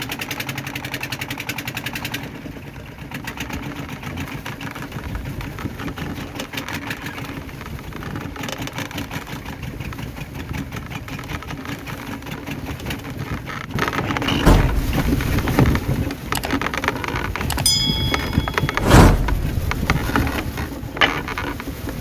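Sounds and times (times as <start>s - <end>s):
loud rushing gust: 14.4s - 16.1s, 17.5s - 20.8s.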